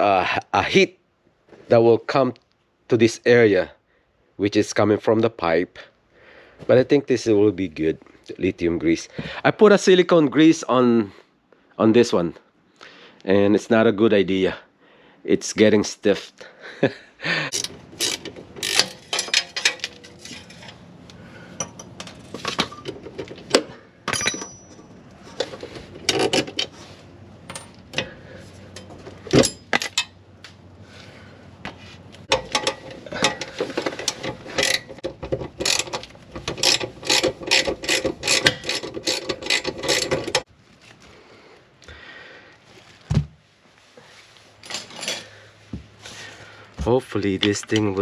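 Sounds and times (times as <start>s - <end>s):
ratchet wrench clicking: 17.5s - 20.0s, 33.8s - 40.4s
metal parts knocking: 17.5s - 20.7s, 21.6s - 26.7s, 32.3s - 40.4s.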